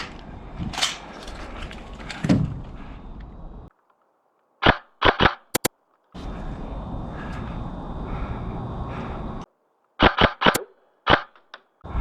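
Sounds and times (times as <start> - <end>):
outdoor field noise: 0.0 - 12.0
sharp cracks: 3.7 - 6.1, 9.9 - 11.8
very sharp clicks: 4.6 - 5.7, 9.9 - 11.7.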